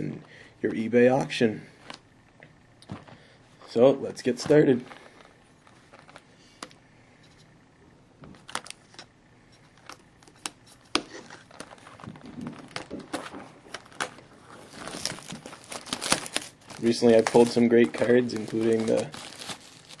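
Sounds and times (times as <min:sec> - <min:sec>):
plastic wrap crinkling: 0:09.8 - 0:20.0.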